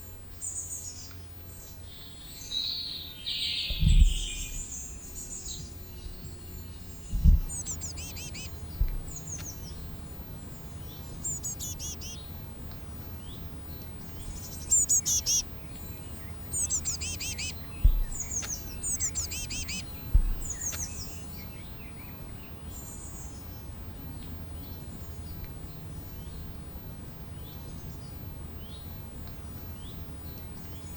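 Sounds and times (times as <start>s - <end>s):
small birds chirping: 0.3s - 26.6s
steady low rumble: 3.6s - 21.0s.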